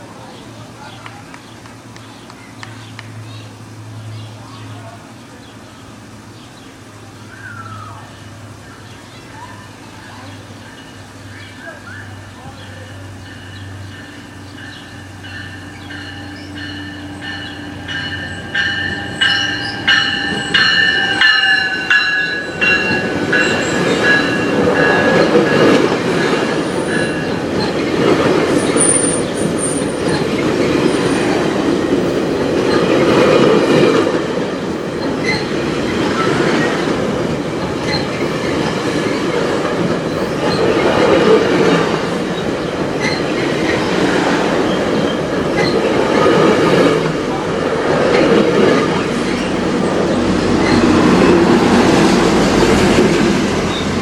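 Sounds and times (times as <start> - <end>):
train coaches rumbling past: 0.0 - 54.0
train wheel clicks: 15.9 - 54.0.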